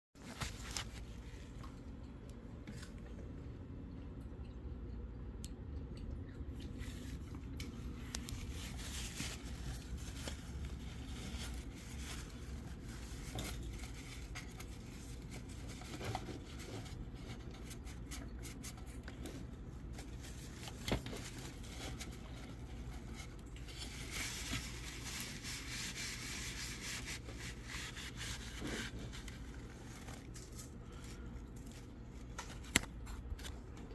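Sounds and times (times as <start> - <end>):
steady low hum: 0.2 - 33.9
handling rubbing and scraping: 19.9 - 33.5.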